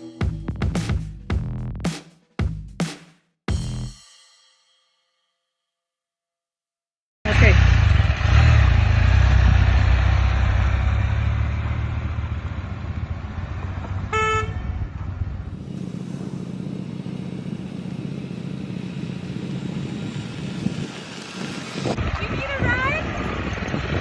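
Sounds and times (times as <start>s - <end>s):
engine hum: 7.3s - 24.0s
vehicle rumble: 7.3s - 24.0s
car horn toot: 14.1s - 14.9s.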